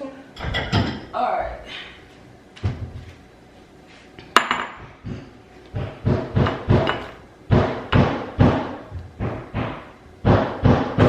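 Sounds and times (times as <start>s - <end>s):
kitchenware knocking: 4.4s - 4.8s, 6.0s - 8.6s.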